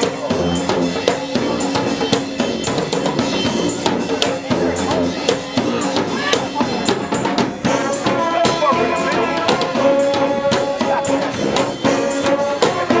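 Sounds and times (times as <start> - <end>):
drums: 0.0 - 13.0
shaken percussion: 0.0 - 13.0
horns holding long notes: 7.6 - 13.0.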